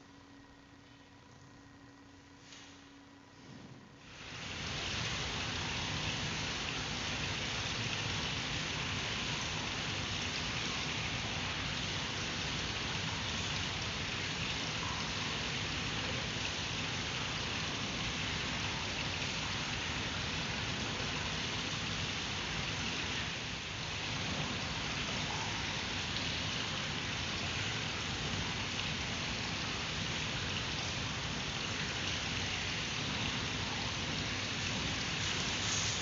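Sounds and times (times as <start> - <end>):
background hiss: 33.5 - 36.0.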